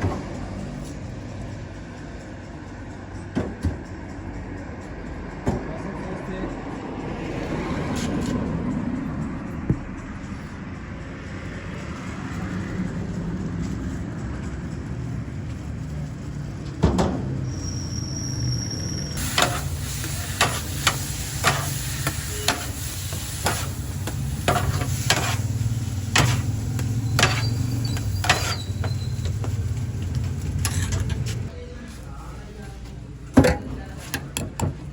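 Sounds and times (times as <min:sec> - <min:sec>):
traffic rumble: 0:00.0 - 0:34.9
cooking utensils knocking: 0:20.4 - 0:25.5, 0:26.1 - 0:31.5.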